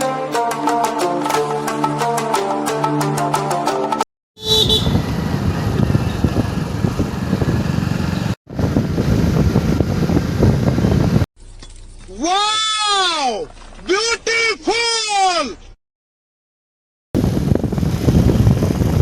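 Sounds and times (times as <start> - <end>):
motorcycle engine and road noise: 4.4 - 12.1, 17.2 - 19.0
wind buffeting microphone: 4.9 - 11.3, 17.2 - 19.0.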